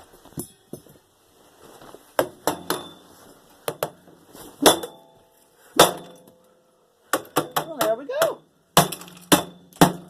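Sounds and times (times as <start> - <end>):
metallic ring: 0.3 - 1.0
glass and metal clinking: 0.4 - 1.0.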